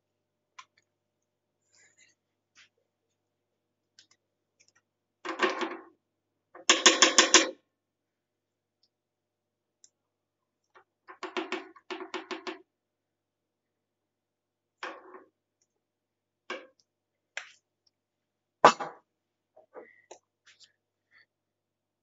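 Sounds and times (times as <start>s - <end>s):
metal spatulas tapping on steel plate: 6.7s - 7.5s.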